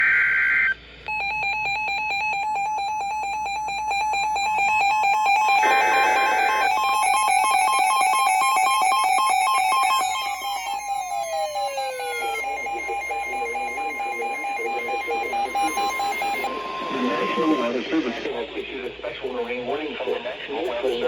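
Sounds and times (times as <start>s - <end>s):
pulsing two-tone alarm: 1.1s - 18.4s
falling whistle-like tones: 5.3s - 18.2s.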